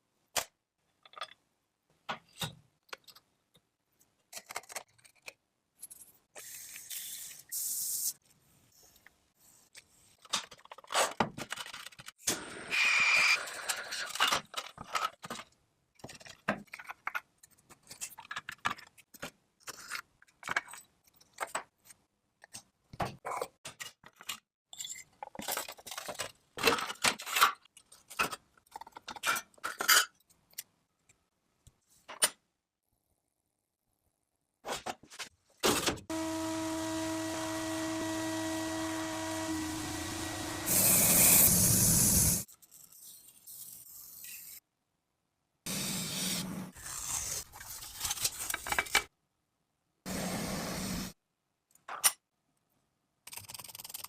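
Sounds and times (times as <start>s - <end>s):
hissing machine hum: 36.1s - 42.4s.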